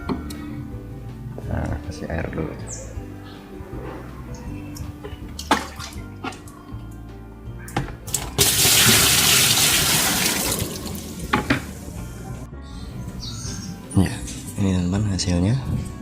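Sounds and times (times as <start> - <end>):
water running into washing machine tub: 8.4 - 11.9.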